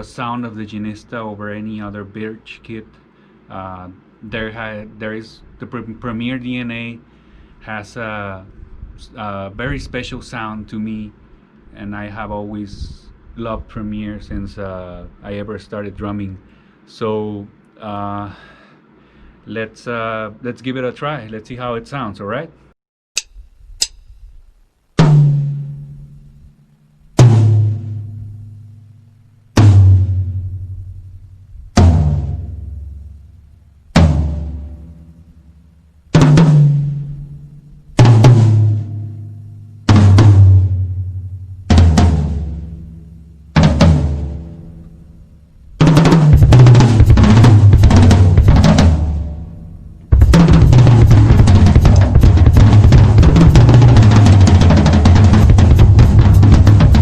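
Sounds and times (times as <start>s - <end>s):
drum kit playing: 25.0s - 26.6s, 27.2s - 57.0s.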